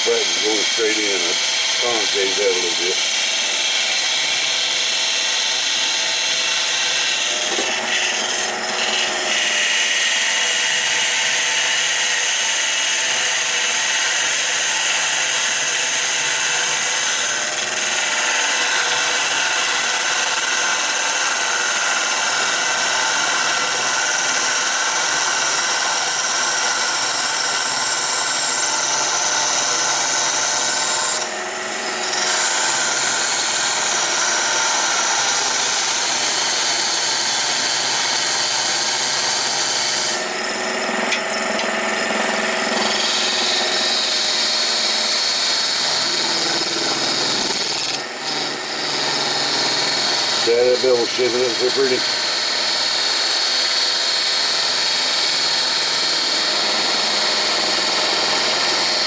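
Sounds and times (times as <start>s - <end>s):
chisel scraping spinning wood: 0.0s - 59.0s
lathe motor hum: 0.0s - 59.0s.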